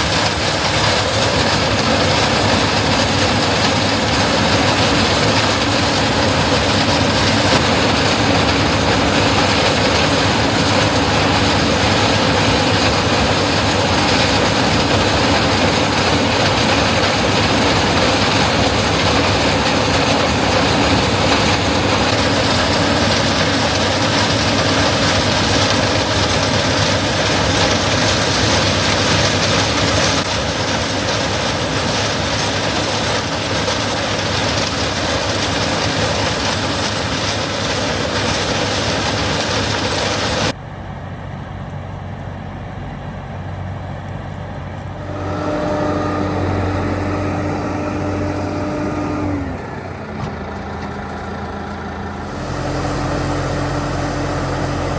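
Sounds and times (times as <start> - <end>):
machinery clattering rattle: 0.0 - 40.6
combine harvester engine drone: 0.0 - 54.9.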